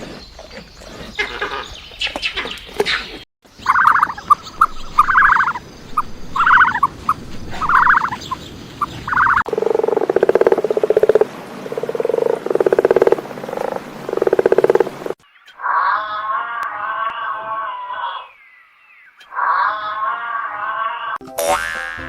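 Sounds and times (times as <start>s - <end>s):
frog rattling croaks: 3.7s - 5.6s, 6.4s - 6.9s, 7.6s - 8.2s, 8.8s - 15.9s.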